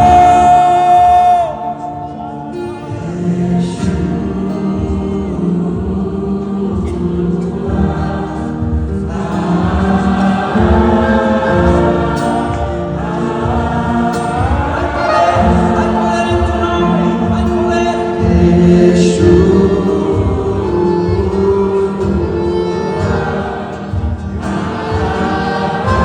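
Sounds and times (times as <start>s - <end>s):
choir singing worship music: 0.0s - 26.0s.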